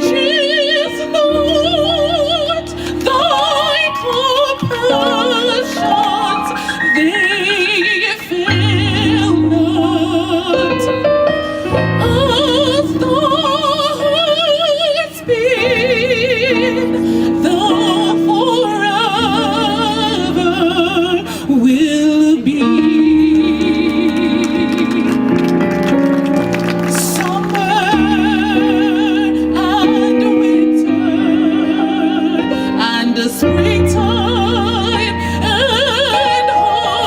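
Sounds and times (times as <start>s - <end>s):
sustained keyboard chords: 0.0s - 37.0s
gospel choir singing: 27.0s - 37.0s.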